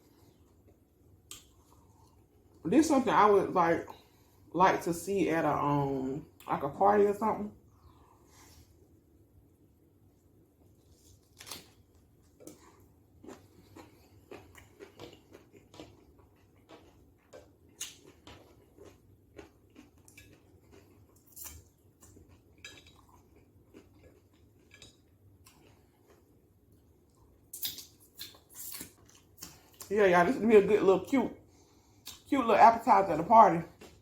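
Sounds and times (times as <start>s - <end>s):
chewing and crunching cucumber: 10.7s - 29.9s.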